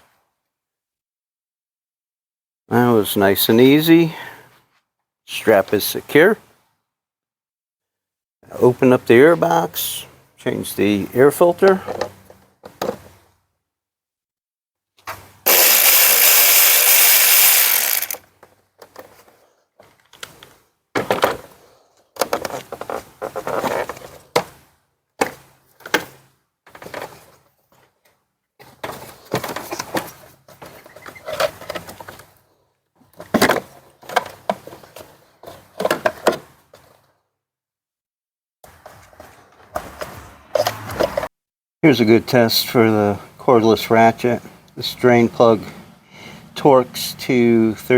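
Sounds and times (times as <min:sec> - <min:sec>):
plastic clatters and rattles: 0:22.2 - 0:24.6, 0:33.0 - 0:37.0.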